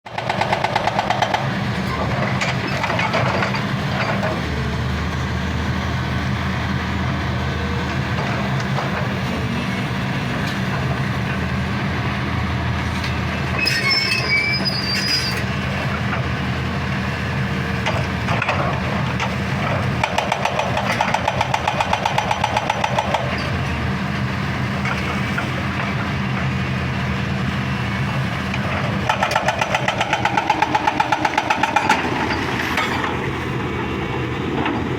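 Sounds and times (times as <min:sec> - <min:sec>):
diesel engine running: 0:00.1 - 0:34.9
brief high squeal: 0:13.6 - 0:15.4
hydraulic breaker pounding rock: 0:17.8 - 0:23.8, 0:28.5 - 0:33.4.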